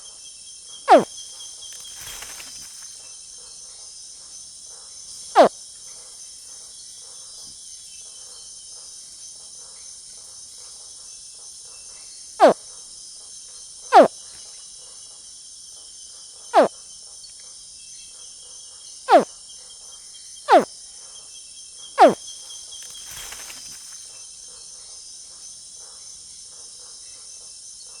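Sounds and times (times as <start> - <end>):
crickets trilling: 0.0 - 7.0, 12.0 - 14.2, 15.2 - 17.1, 17.8 - 25.8
young crocodilian calls: 0.9 - 1.1, 13.9 - 14.1, 19.1 - 19.3, 20.5 - 20.7, 22.0 - 22.2
rustling: 0.9 - 3.0, 22.0 - 24.2.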